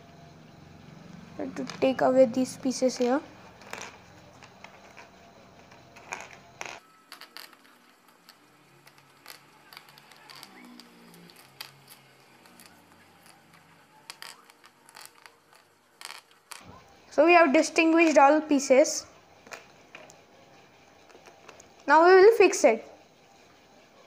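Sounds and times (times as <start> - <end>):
plastic cube pieces clicking: 2.9 - 5.1, 5.7 - 16.6.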